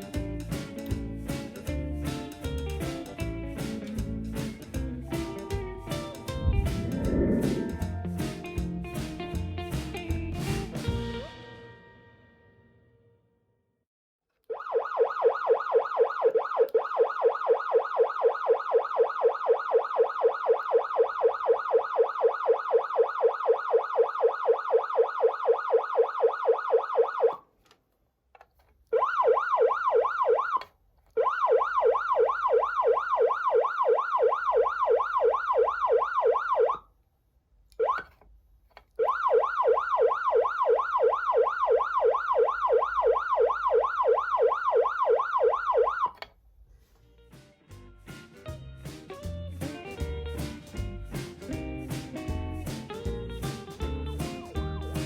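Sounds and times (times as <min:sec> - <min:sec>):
siren yelp tone: 0:14.5 - 0:27.4, 0:29.0 - 0:36.8, 0:39.0 - 0:46.2.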